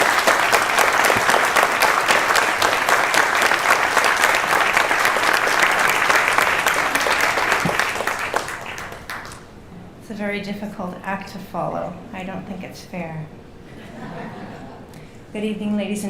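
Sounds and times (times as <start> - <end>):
audience applauding: 0.0 - 9.5.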